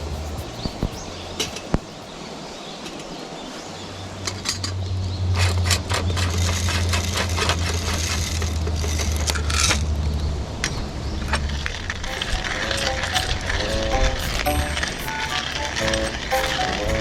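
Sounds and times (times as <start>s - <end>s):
steady low hum: 0.0s - 2.3s.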